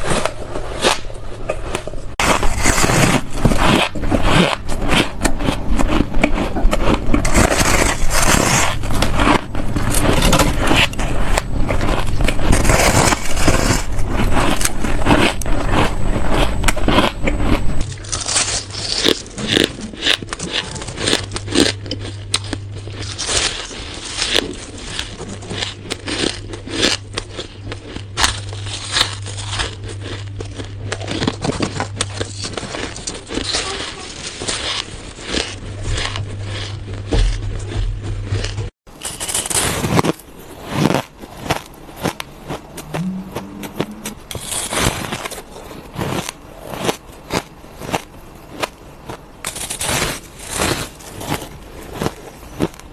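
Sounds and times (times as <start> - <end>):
steady low hum: 0.0 - 52.9
ice being chewed: 1.7 - 52.9.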